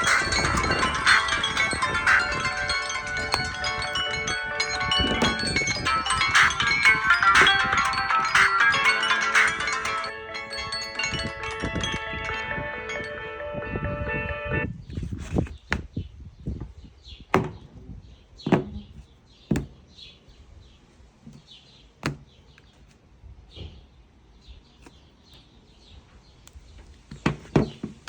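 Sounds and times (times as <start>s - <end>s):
sharp knocks and taps: 19.5s - 19.8s.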